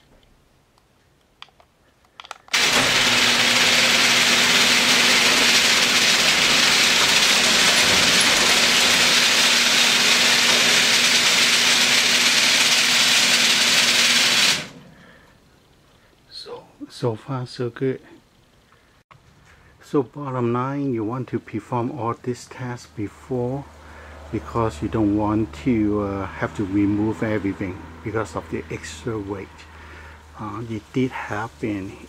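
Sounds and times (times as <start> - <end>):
garage door opener humming: 2.5 - 15.0.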